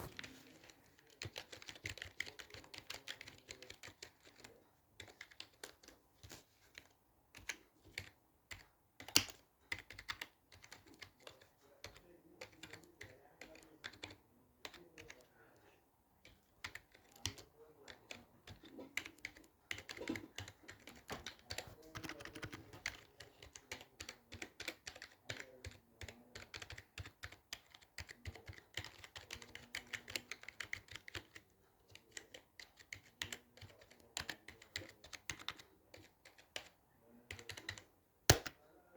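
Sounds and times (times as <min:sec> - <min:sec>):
typing on computer keyboard: 0:00.0 - 0:15.3, 0:16.2 - 0:38.6.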